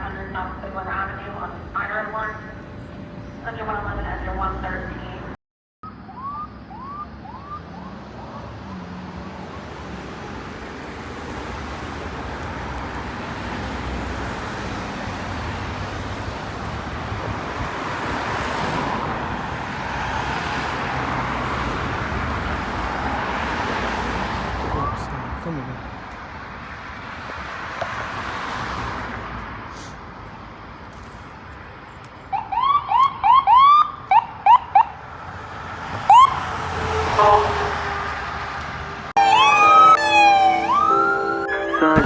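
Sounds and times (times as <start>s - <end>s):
road traffic noise: 0.0s - 42.0s
quick rising siren chirps: 5.8s - 9.8s, 36.1s - 38.2s, 39.2s - 42.0s
ambulance siren: 5.8s - 12.1s, 22.6s - 25.2s, 32.3s - 35.1s, 35.9s - 38.5s, 39.1s - 42.0s.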